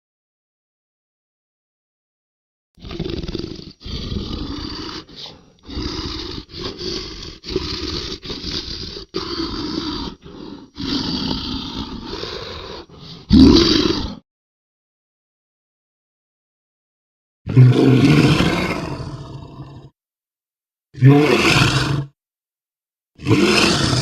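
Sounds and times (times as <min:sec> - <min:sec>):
monster growling and roaring: 0:02.8 - 0:14.2, 0:17.5 - 0:19.9, 0:21.0 - 0:22.2, 0:23.2 - 0:24.0.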